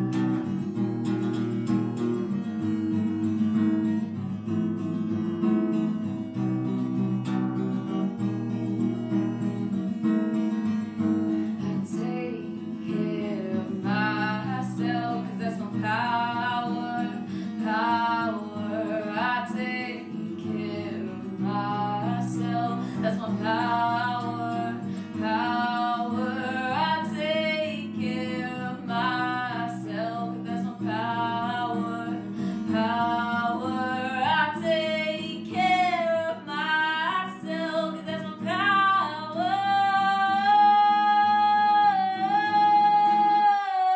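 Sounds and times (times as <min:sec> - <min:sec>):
acoustic guitar strumming: 0:00.0 - 0:43.9
woman singing: 0:05.8 - 0:43.9.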